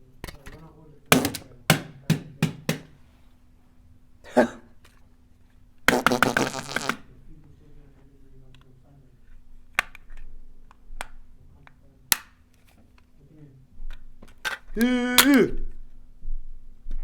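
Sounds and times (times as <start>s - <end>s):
knock of hard object: 1.1s - 3.0s.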